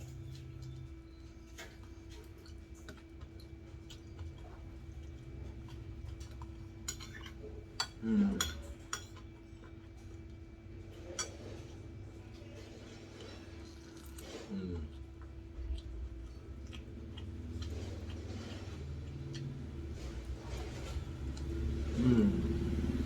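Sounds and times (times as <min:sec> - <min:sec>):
steady low hum: 0:00.0 - 0:23.0
person murmuring: 0:21.9 - 0:22.7.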